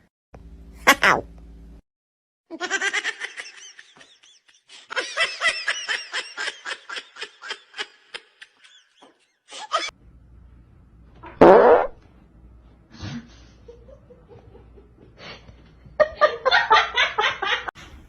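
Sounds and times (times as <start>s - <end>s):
high-pitched laughter: 0.9s - 1.2s, 2.5s - 9.9s.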